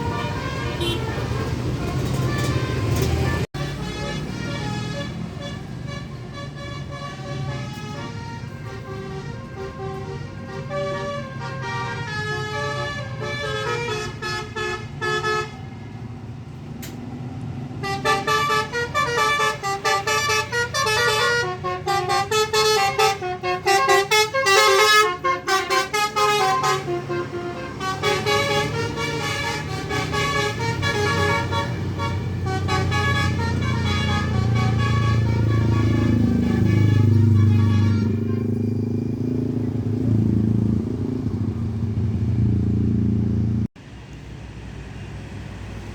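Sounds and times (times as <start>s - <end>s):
multi-tone air horn tunes: 0.0s - 15.7s, 17.8s - 38.8s
bus engine rumble: 0.0s - 45.9s.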